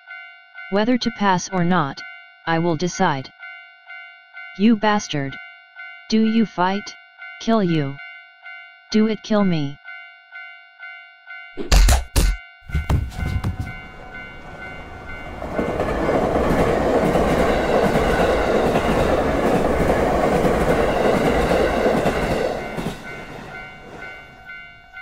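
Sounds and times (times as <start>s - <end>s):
crossing warning bell clanging: 12.7s - 25.0s
train rumbling past: 12.8s - 24.6s.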